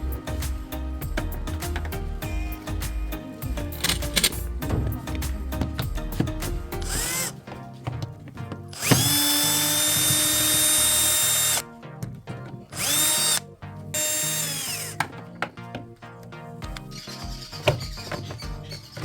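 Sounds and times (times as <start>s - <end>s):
power drill whining: 6.8s - 7.4s, 8.8s - 11.6s, 12.7s - 13.4s, 14.0s - 15.1s.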